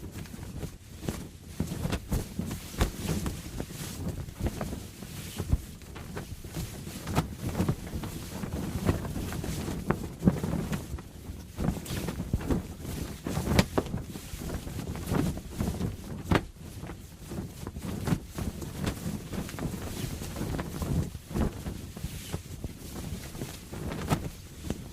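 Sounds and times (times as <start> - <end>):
sail flapping and snapping: 0.0 - 24.9.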